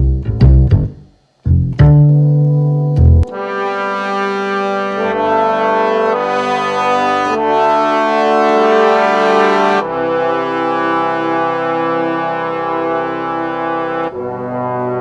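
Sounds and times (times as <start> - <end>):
synthesizer brass chords: 3.1 - 15.0.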